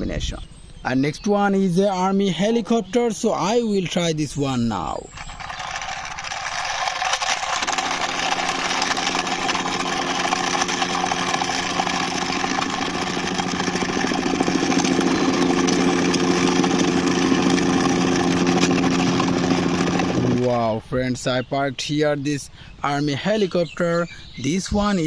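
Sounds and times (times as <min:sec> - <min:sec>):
motor humming with hiss: 0:05.4 - 0:20.5.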